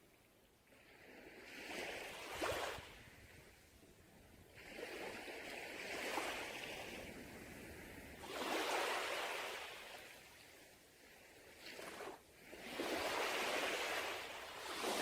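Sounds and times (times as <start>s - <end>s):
sea waves washing onto beach: 4.9s - 10.4s, 11.6s - 15.0s.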